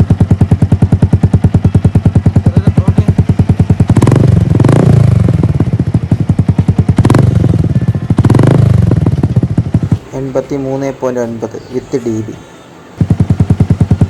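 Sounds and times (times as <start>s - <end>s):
motorcycle engine idling and revving: 0.0s - 12.2s, 12.8s - 14.0s.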